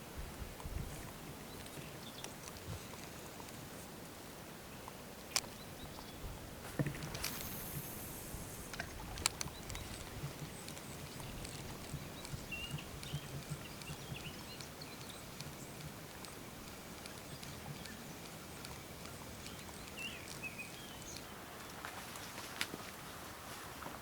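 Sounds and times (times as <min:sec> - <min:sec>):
outdoor background noise: 0:00.0 - 0:24.0
small birds chirping: 0:06.9 - 0:21.8
faint ticks and taps: 0:08.7 - 0:22.8.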